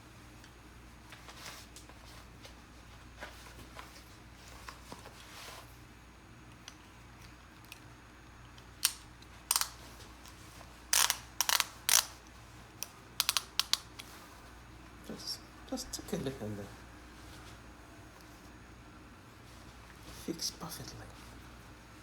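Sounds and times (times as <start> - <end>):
clothing rustling: 1.0 - 5.9
ratchet belt clicking: 10.9 - 12.2, 12.8 - 14.0.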